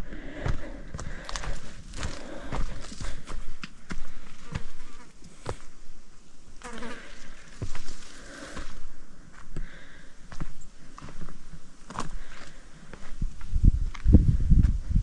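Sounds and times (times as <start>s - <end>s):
insect buzzing: 6.6s - 8.6s.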